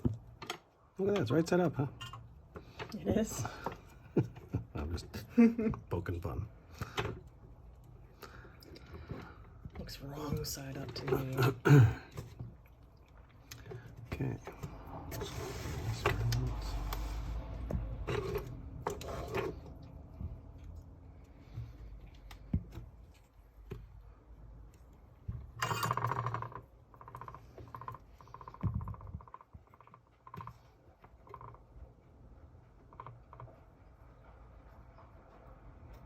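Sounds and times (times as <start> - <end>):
small parts clicking and clinking: 25.6 - 29.5.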